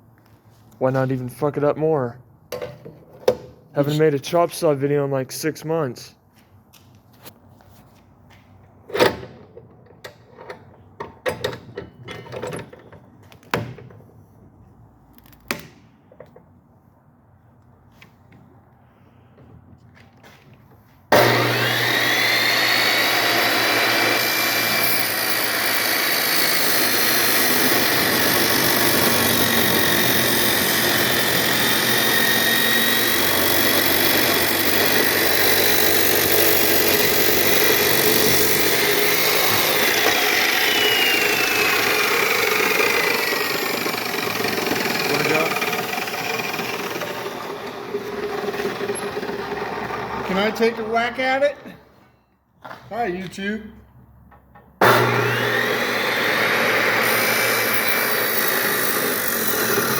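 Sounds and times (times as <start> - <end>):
chop saw whining: 21.1 - 51.0, 54.8 - 59.9.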